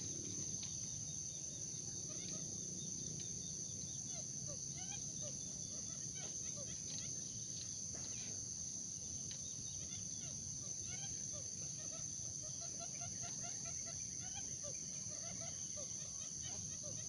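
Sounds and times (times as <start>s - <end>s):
insect chorus buzz: 0.0s - 17.0s
bird chirps: 9.0s - 17.0s.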